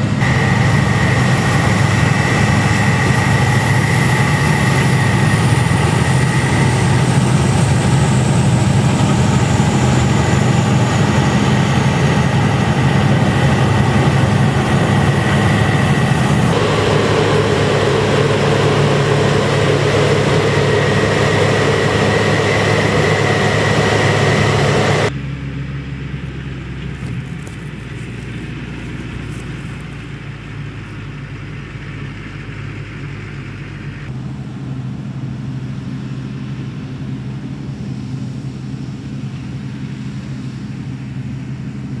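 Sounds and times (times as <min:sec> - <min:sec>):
farm machinery engines humming: 0:00.0 - 0:42.0.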